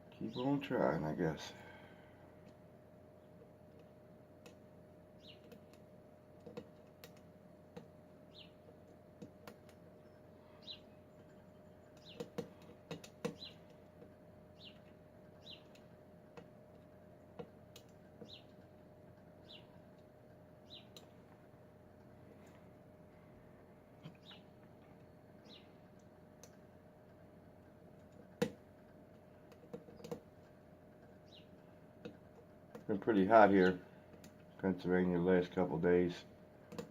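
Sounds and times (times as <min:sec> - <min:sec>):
faint hum: 0:00.0 - 0:36.9
bird chirping: 0:05.2 - 0:05.7, 0:08.3 - 0:08.6, 0:10.0 - 0:12.4, 0:13.3 - 0:13.7, 0:14.5 - 0:15.9, 0:18.2 - 0:18.6, 0:19.4 - 0:19.8, 0:20.6 - 0:21.1, 0:24.0 - 0:25.9, 0:31.1 - 0:31.8.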